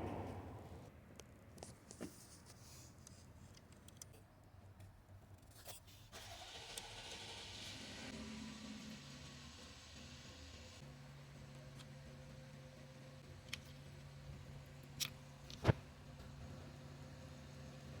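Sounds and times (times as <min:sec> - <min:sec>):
low hum: 0:00.0 - 0:00.9.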